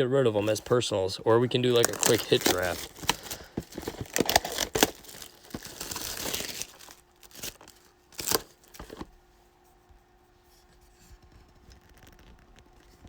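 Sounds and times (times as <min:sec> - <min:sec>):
plastic wrapping tearing and crumpling: 0:01.4 - 0:09.1.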